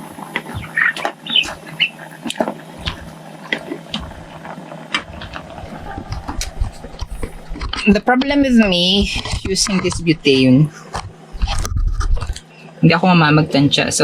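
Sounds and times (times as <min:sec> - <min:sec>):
steady low hum: 0:00.0 - 0:14.0
utensil against metal pot: 0:05.0 - 0:12.5.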